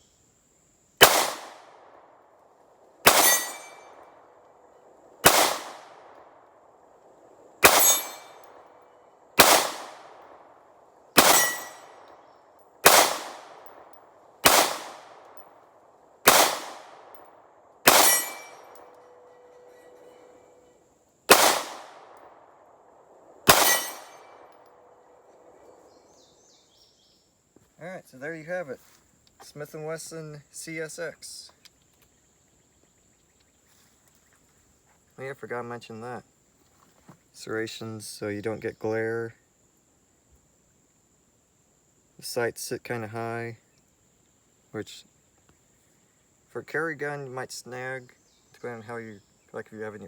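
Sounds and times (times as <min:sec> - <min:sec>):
pistol shots: 0:01.0 - 0:02.0, 0:03.0 - 0:04.3, 0:05.2 - 0:06.2, 0:07.6 - 0:08.6, 0:09.4 - 0:10.4, 0:11.2 - 0:12.1, 0:12.8 - 0:15.4, 0:16.2 - 0:19.3, 0:21.3 - 0:22.5, 0:23.4 - 0:24.8.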